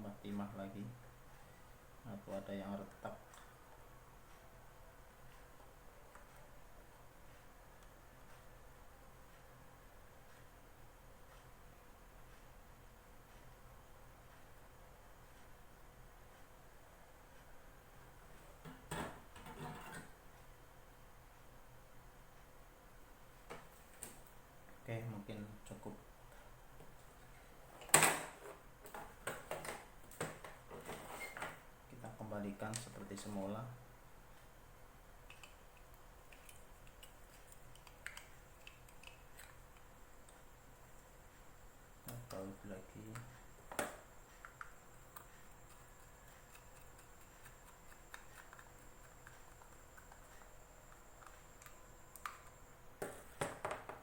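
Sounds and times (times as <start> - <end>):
screwdriver and small parts clicking: 35.3 - 40.4.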